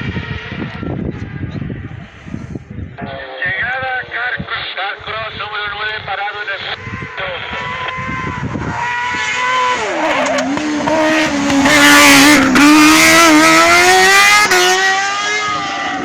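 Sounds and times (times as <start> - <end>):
high-revving buggy engine: 0.0 - 2.6, 6.6 - 16.0.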